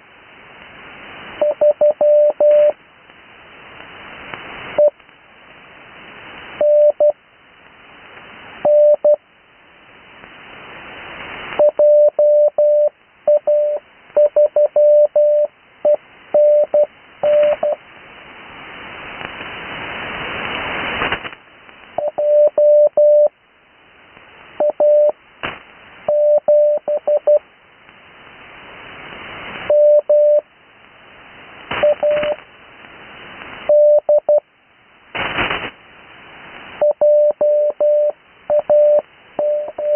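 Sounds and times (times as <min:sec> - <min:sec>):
radio receiver hiss: 0:00.0 - 0:39.9
morse code tone: 0:01.4 - 0:02.8, 0:06.6 - 0:07.1, 0:11.6 - 0:17.8, 0:22.0 - 0:23.3, 0:24.6 - 0:25.2, 0:26.1 - 0:27.4, 0:29.7 - 0:30.4, 0:31.8 - 0:32.4, 0:33.7 - 0:34.4, 0:36.8 - 0:39.9.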